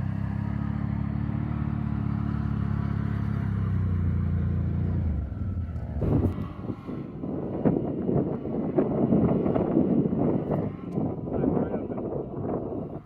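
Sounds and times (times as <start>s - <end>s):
atv engine running: 0.0s - 13.0s.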